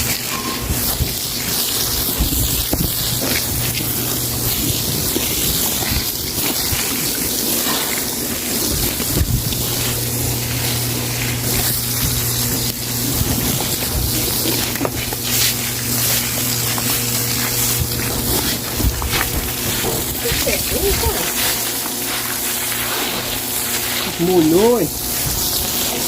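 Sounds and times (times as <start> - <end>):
low motor hum: 0.0 - 26.0
water hiss: 0.0 - 26.0.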